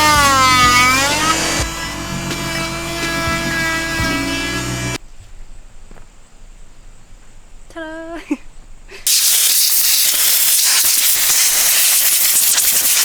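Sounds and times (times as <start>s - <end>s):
pressurised gas hissing: 9.0s - 13.0s.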